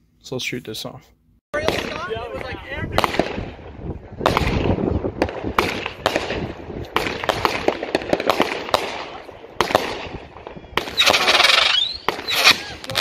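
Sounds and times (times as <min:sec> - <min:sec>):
fireworks bangs: 0:01.6 - 0:13.0
rushing hiss of fireworks: 0:10.8 - 0:13.0.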